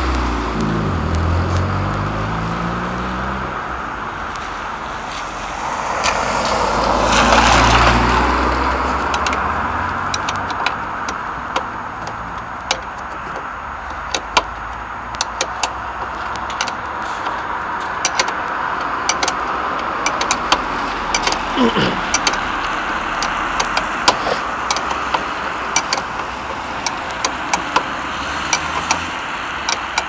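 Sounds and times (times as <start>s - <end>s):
road traffic passing: 0.0s - 30.0s
metallic clicks of hand tools: 6.0s - 30.0s.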